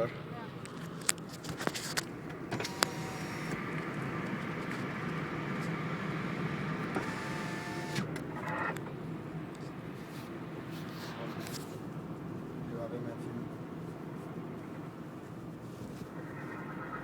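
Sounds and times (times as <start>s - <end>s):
car engine droning: 2.0s - 10.6s.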